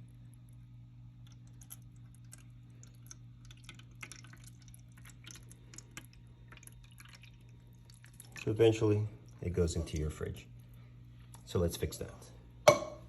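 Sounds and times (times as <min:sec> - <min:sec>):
refrigerator low hum: 0:00.0 - 0:13.0
water dripping and ticking: 0:01.2 - 0:10.2.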